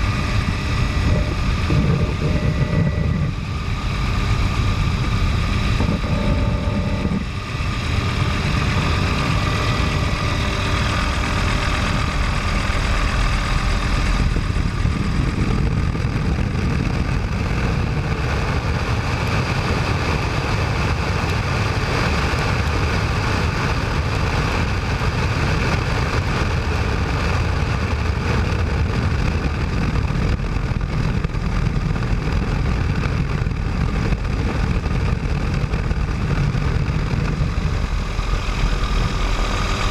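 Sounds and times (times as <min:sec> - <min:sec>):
faint high whine: 0:00.0 - 0:15.7
helicopter engine and rotor drone: 0:00.0 - 0:39.9.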